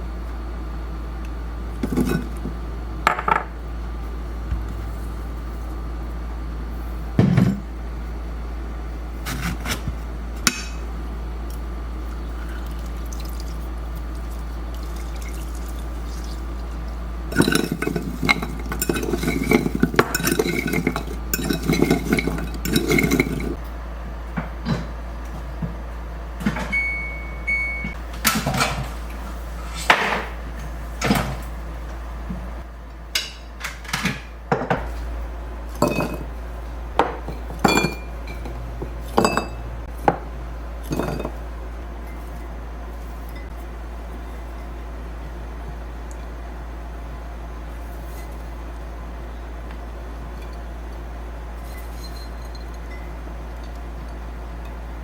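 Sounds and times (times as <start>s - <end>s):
steady low hum: 0.0s - 55.0s
dishes and utensils clattering: 1.8s - 3.5s, 17.3s - 23.6s, 35.8s - 36.3s, 37.0s - 40.2s, 40.8s - 41.4s.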